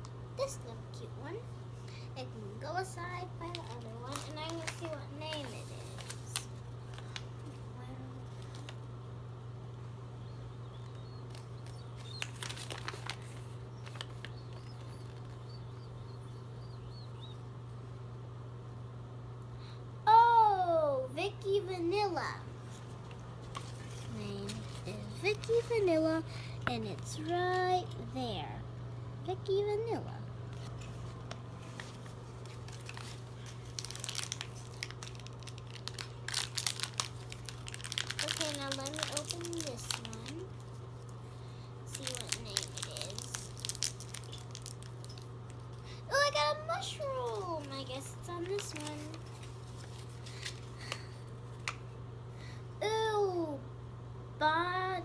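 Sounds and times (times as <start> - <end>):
steady low hum: 0.0 - 55.0
plastic packaging crinkling: 3.3 - 7.6, 10.7 - 15.8, 22.7 - 27.6, 30.6 - 41.2, 41.8 - 45.9, 46.7 - 51.8
crackling handling noise: 3.4 - 8.9, 10.7 - 16.2, 22.6 - 27.7, 30.5 - 41.2, 41.9 - 45.9, 46.8 - 51.9.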